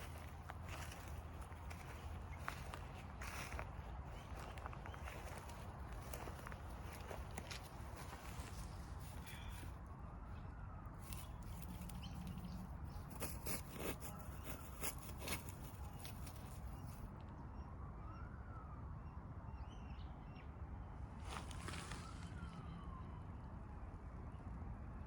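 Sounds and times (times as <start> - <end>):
distant siren wailing: 17.3 - 20.8, 21.5 - 24.3.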